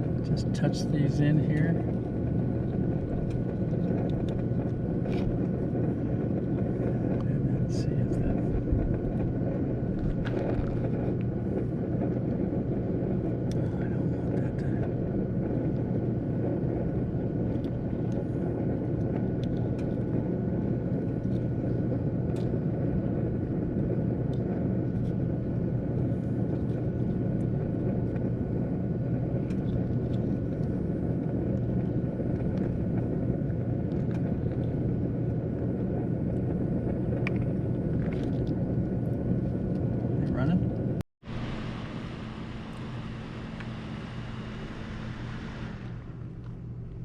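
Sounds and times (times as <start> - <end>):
cooling fans whirring: 0.0 - 47.0.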